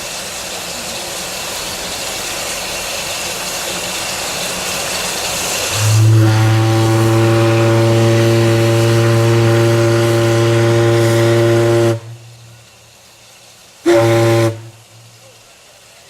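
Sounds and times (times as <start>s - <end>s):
steam hissing: 0.0s - 16.0s
deep steam whistle blast: 5.5s - 15.4s.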